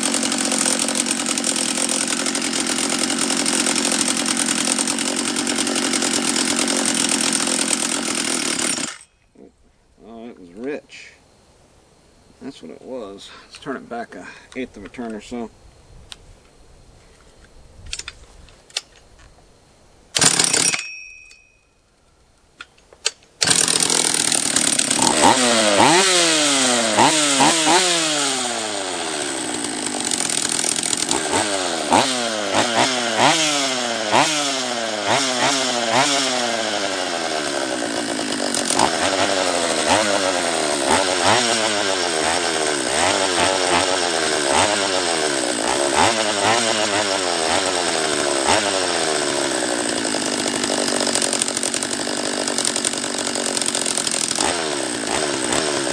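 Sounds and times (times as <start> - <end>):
chainsaw engine running: 0.0 - 9.1, 20.2 - 20.8, 23.4 - 55.9.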